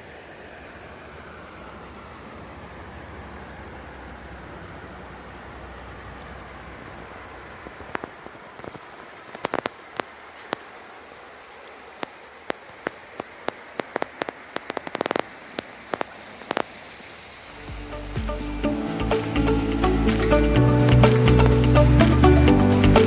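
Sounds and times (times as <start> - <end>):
raindrops ticking on a surface: 0.0 - 23.0
steady hiss: 7.0 - 23.0.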